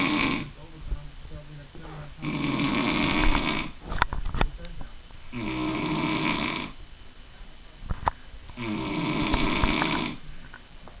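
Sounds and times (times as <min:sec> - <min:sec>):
person snoring: 0:00.0 - 0:00.6, 0:02.2 - 0:03.8, 0:05.3 - 0:06.8, 0:08.5 - 0:10.3.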